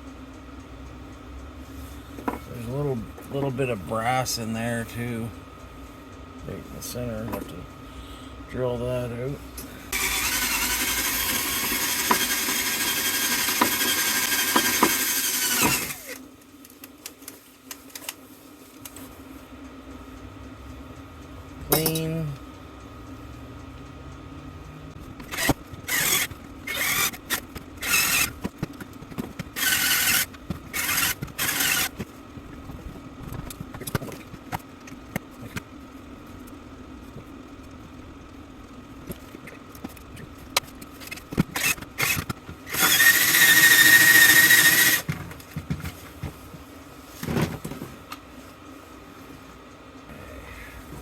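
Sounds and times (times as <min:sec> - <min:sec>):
steady whine: 0:01.4 - 0:51.0
tool clicks: 0:10.0 - 0:16.2.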